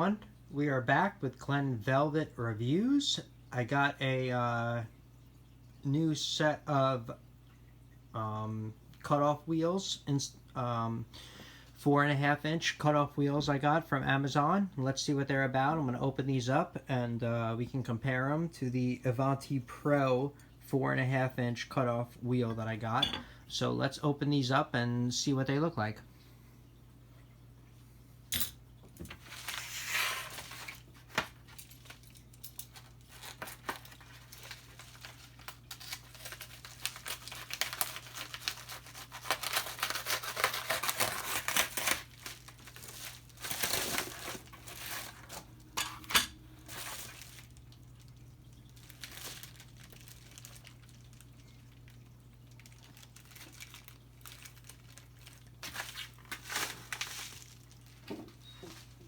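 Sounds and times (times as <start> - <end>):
packaging crinkling and tearing: 29.1 - 45.7, 46.6 - 59.0.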